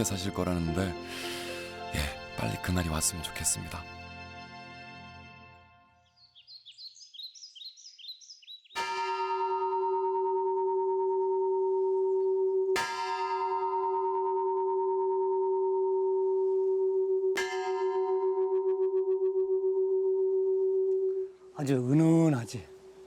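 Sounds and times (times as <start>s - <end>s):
birds chirping: 6.0s - 8.9s.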